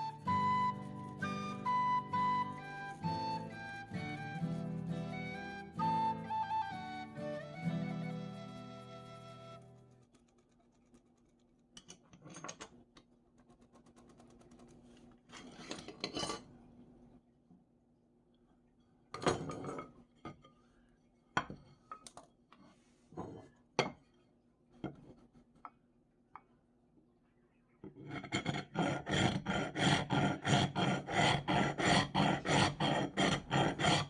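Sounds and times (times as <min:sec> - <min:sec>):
flute tune: 0:00.0 - 0:10.0.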